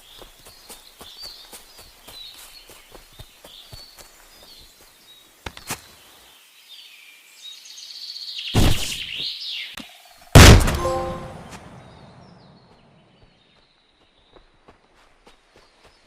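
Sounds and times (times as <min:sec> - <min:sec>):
birds chirping faintly: 0:00.0 - 0:16.0
loud gunshot with ringing tail: 0:10.4 - 0:11.4
sharp bang: 0:10.4 - 0:11.6.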